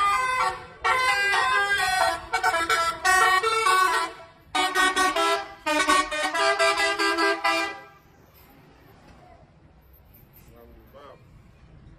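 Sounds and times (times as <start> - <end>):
multi-tone air horn melody: 0.0 - 8.1.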